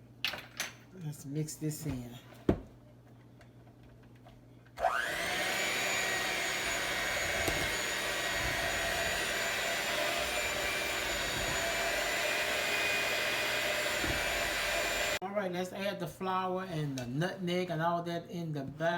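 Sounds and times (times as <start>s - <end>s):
electric mixer motor whine: 4.8s - 15.2s.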